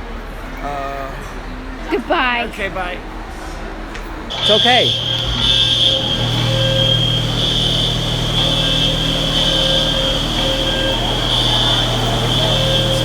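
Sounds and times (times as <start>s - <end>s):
fire alarm high-pitched tone: 4.3s - 13.0s
low hum: 4.3s - 13.0s.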